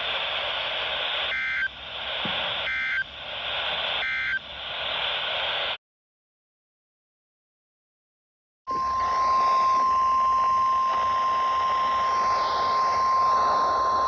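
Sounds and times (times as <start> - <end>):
radio static hiss: 0.0 - 5.8, 8.7 - 14.0
warbling digital data tones: 8.7 - 14.0.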